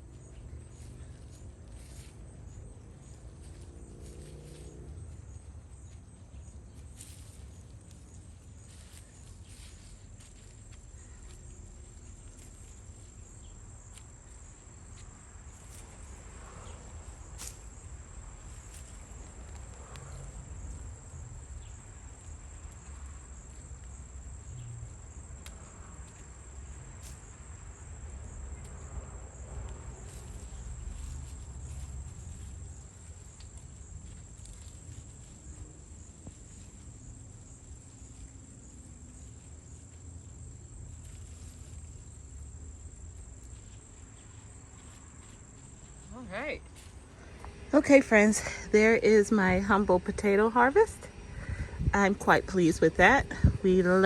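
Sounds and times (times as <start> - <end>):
crickets trilling: 0.0 - 54.0
soft scuffs and clicks: 6.7 - 17.8.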